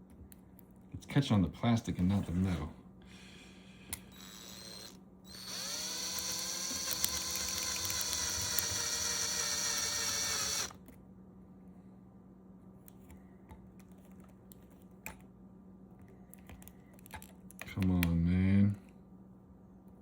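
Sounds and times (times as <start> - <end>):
power drill spinning: 4.1 - 10.8.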